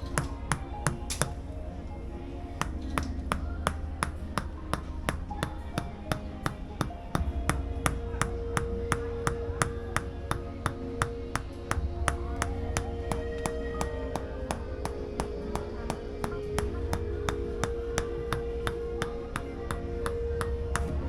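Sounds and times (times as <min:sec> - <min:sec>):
wooden mallet striking wooden wedge: 0:00.0 - 0:01.9, 0:02.5 - 0:21.0.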